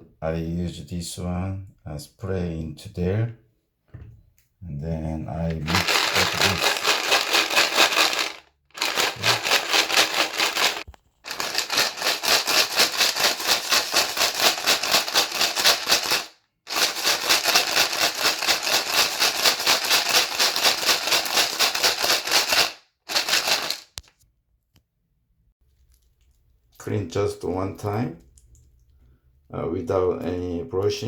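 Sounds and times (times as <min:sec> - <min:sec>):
keys rattling in shaken bottle: 0:05.6 - 0:23.9.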